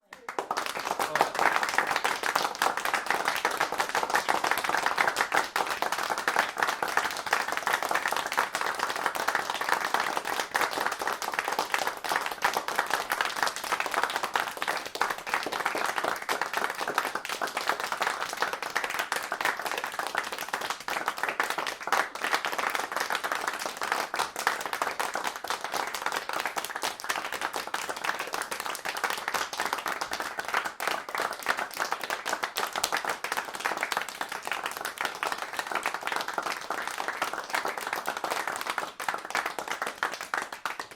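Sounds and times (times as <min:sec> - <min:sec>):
audience applauding: 0:00.0 - 0:40.9.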